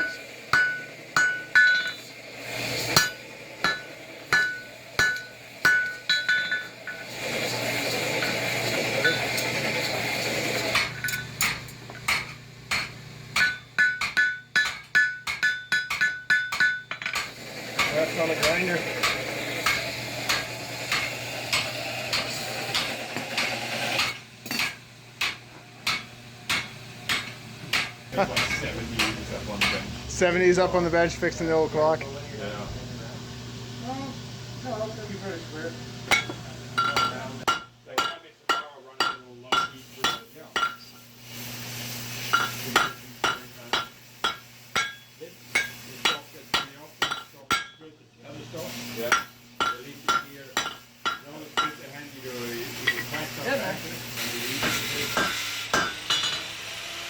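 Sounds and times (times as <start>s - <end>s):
hammer striking metal on anvil: 0.0s - 2.1s, 2.9s - 7.1s, 10.7s - 29.9s, 36.1s - 41.0s, 42.2s - 47.8s, 49.0s - 51.8s, 54.6s - 56.5s.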